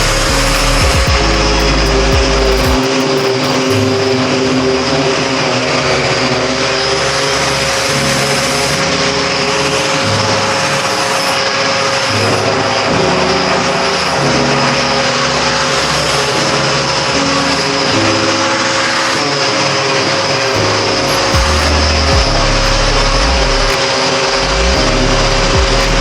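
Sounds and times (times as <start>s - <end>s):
machine running: 0.0s - 26.0s
steady tone: 0.0s - 26.0s.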